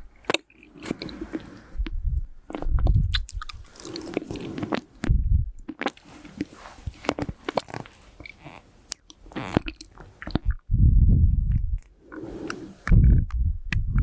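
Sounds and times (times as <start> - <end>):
wet mouth smacks: 2.5 - 3.9
nose breath on microphone: 12.1 - 13.3.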